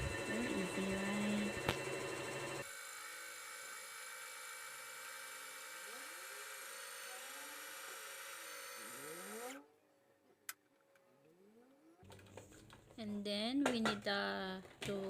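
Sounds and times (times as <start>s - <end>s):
sewing machine running: 0.0s - 9.6s.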